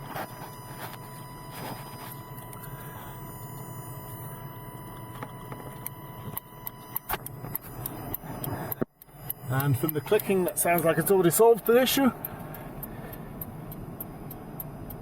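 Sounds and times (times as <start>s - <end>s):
truck low hum: 0.0s - 15.0s
flasher relay clicking: 5.8s - 15.0s.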